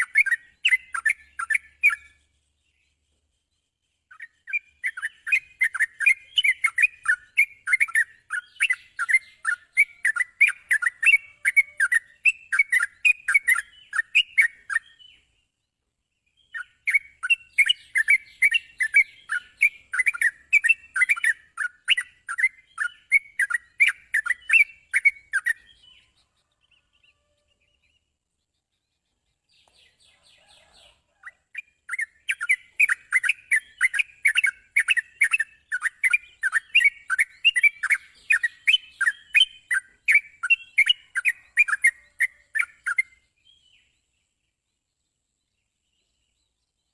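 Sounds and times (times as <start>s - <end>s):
bird rapid chirping song: 0.0s - 46.9s.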